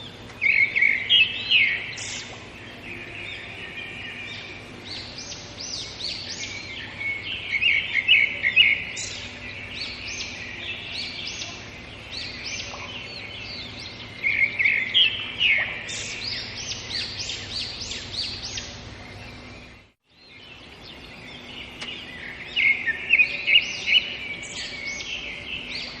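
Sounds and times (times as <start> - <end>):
rapid bird trills: 0.0 - 19.9
songbirds chirping and singing: 0.0 - 26.0.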